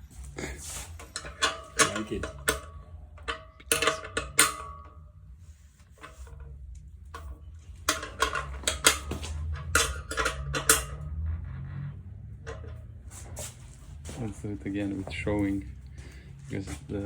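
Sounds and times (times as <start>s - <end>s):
metal parts clinking and rattling: 0.2s - 5.0s, 5.9s - 11.1s.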